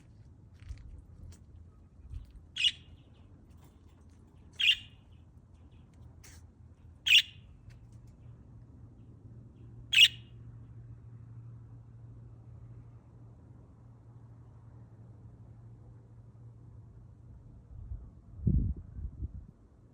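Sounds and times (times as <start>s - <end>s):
lovebirds chirping: 2.5s - 3.3s, 4.4s - 6.4s, 7.0s - 7.5s, 9.9s - 10.2s.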